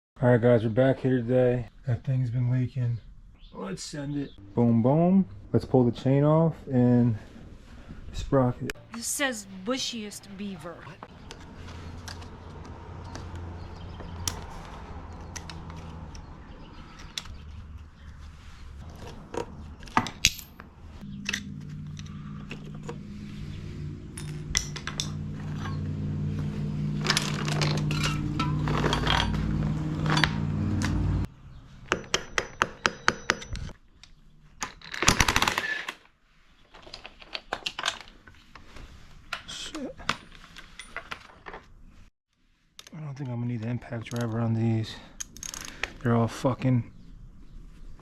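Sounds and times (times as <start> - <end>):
metal tools clinking and scraping: 24.1 - 25.9, 27.0 - 30.3, 40.0 - 41.6.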